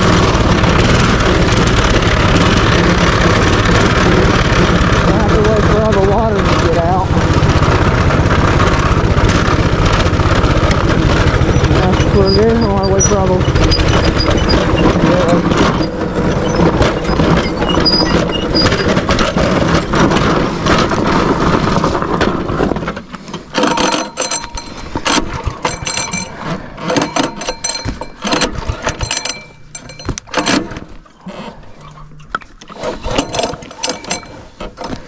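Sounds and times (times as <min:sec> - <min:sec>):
short knocks and rattles: 0:00.0 - 0:31.0
small motorbike engine running: 0:00.0 - 0:35.0.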